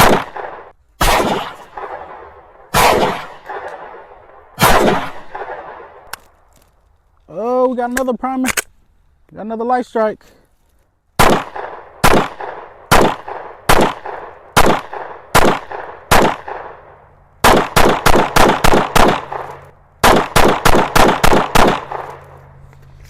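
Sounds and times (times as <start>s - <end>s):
pistol shots: 0.0s - 6.1s, 11.2s - 22.2s.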